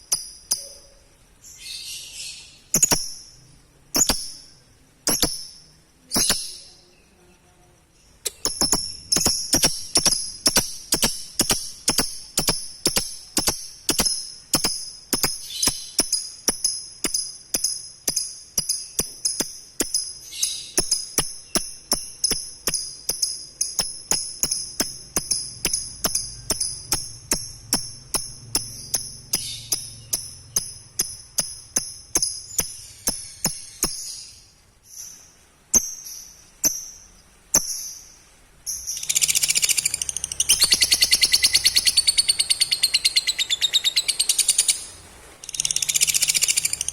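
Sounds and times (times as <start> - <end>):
lovebird chirping: 0.0 - 46.9.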